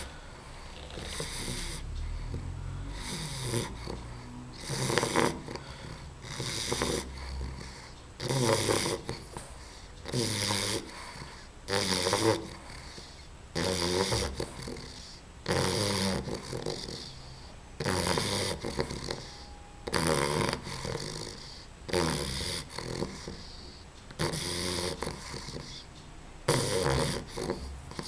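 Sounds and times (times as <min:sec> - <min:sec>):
puppy breathing: 0:00.0 - 0:28.0
puppy snoring: 0:00.0 - 0:28.0.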